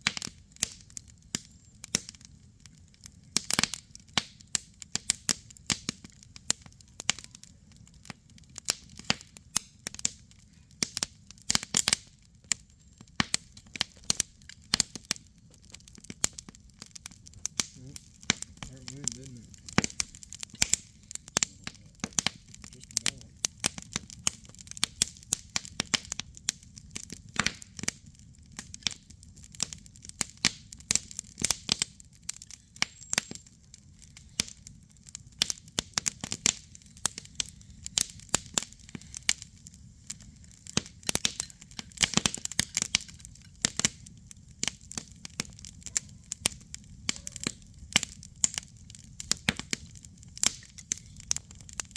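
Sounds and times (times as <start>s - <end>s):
campfire crackling and popping: 0.0s - 51.9s
low fire rumble: 0.0s - 51.9s.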